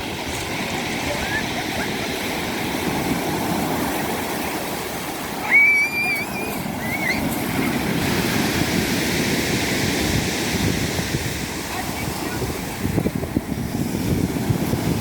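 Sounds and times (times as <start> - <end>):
surf breaking on shore: 0.0 - 15.0
loud high cry: 5.4 - 7.4.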